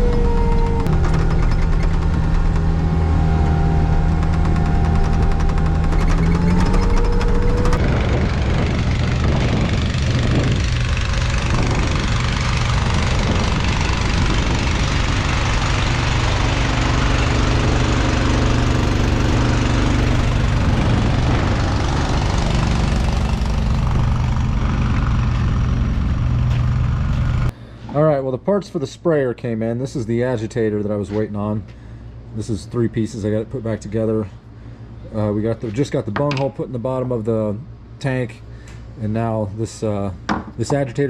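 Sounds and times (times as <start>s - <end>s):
engine running steadily: 0.0s - 27.9s.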